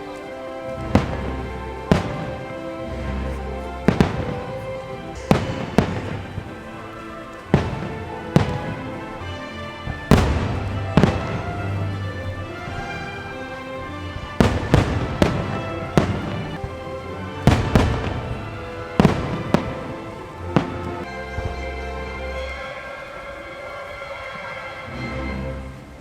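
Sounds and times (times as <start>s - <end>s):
fireworks bangs: 0.0s - 21.8s
orchestral music: 0.0s - 26.0s.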